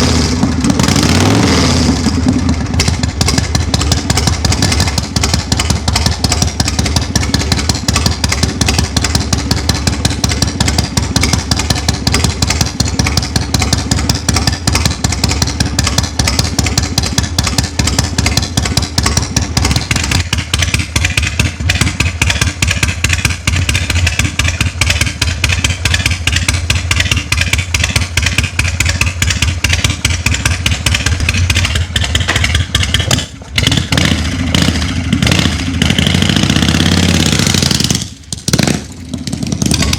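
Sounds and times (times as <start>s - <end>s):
motorcycle engine pulsing: 0.0s - 39.9s.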